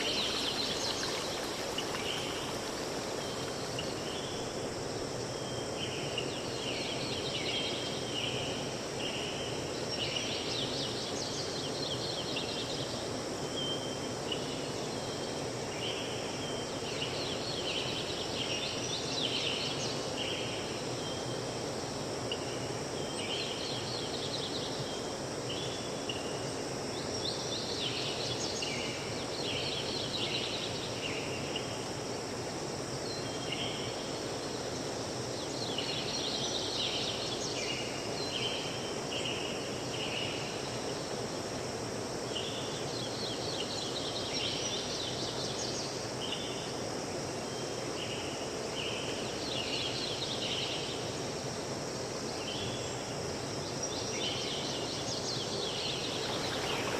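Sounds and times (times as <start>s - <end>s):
songbird chirping: 0.0s - 4.5s, 54.2s - 56.9s
steady rushing hiss: 0.0s - 5.4s, 50.9s - 56.9s.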